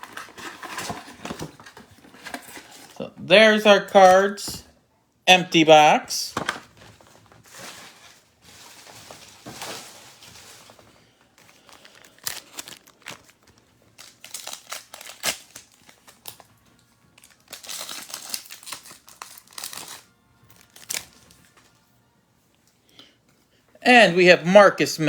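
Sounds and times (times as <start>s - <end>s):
foil wrapper tearing and crinkling: 7.5s - 16.6s, 17.2s - 21.7s.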